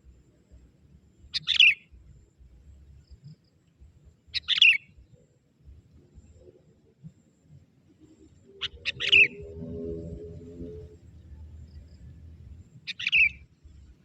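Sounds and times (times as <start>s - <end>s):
bird chirping: 1.1s - 3.5s, 4.3s - 5.3s, 8.0s - 14.0s.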